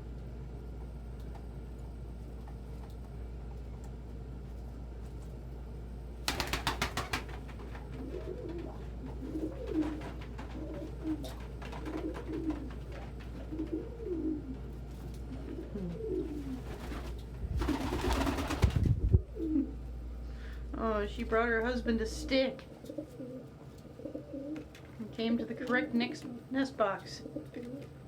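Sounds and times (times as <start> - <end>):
wings flapping: 6.2 - 19.2
pigeons cooing: 6.3 - 19.9, 22.1 - 24.8, 26.1 - 28.0.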